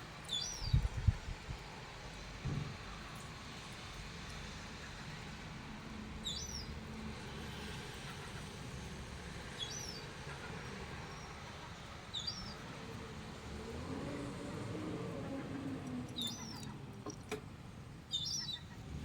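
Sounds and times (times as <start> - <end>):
bird chirping: 12.1 - 12.6, 16.1 - 16.8, 18.1 - 18.8.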